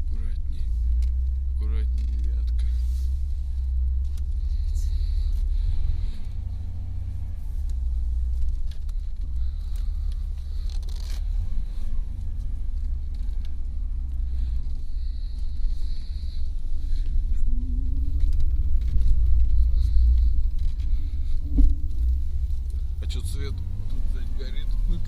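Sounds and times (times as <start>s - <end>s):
car engine and road noise: 0.0s - 25.0s.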